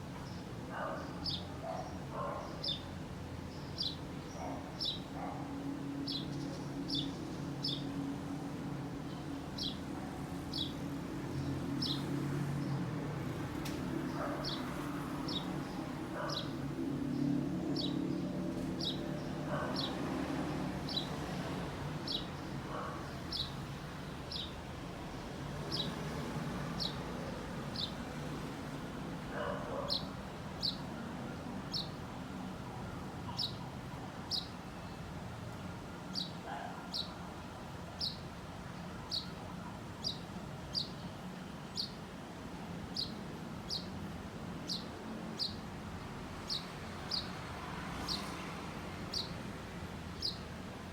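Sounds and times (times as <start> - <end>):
bird chirping: 42.9 - 44.0, 44.6 - 45.6.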